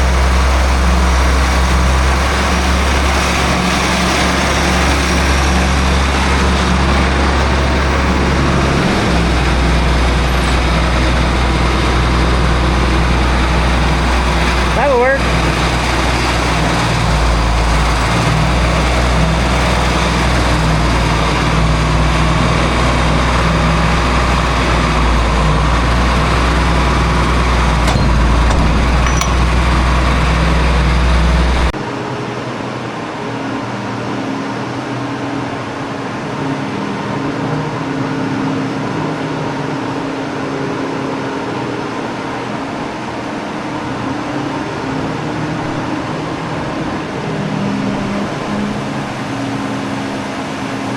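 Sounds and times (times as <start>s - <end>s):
heavy engine rumbling: 0.0s - 31.8s.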